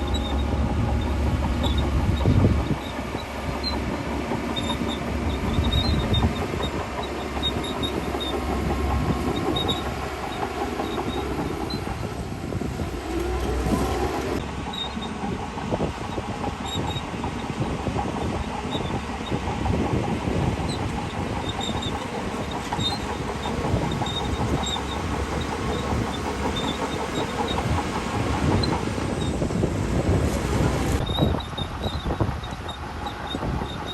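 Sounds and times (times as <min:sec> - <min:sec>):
diesel machinery engine rumble: 0:00.0 - 0:33.9
machinery clanking and clatter: 0:00.0 - 0:33.9.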